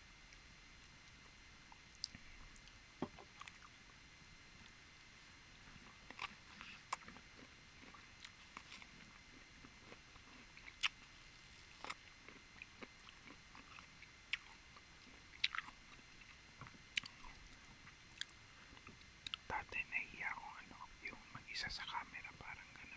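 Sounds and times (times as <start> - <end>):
person chewing food: 5.7 - 19.5.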